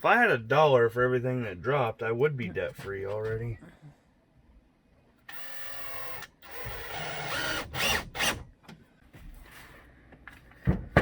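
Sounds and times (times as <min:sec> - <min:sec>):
power drill motor whine: 0:05.3 - 0:08.4.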